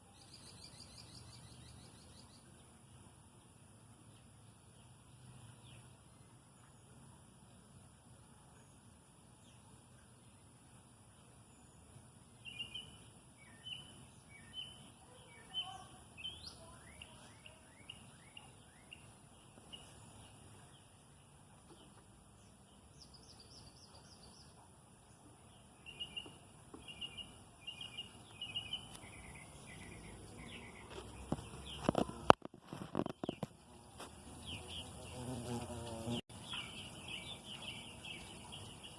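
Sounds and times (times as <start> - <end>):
birds chirping: 8.5 - 38.9.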